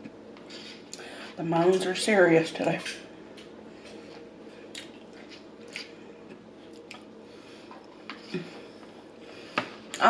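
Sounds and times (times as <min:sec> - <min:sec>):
person chewing food: 0:03.3 - 0:09.0.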